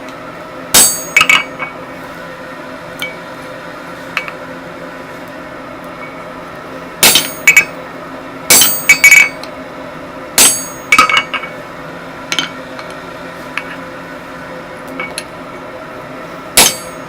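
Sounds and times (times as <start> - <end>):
hammer striking steel on anvil: 0.8 - 1.7, 7.0 - 7.7, 8.5 - 9.4, 10.4 - 11.4, 16.6 - 17.0.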